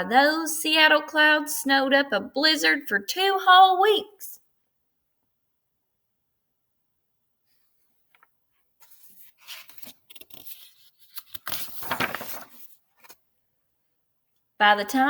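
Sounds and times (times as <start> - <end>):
paper page rustling and crinkling: 8.2 - 13.2.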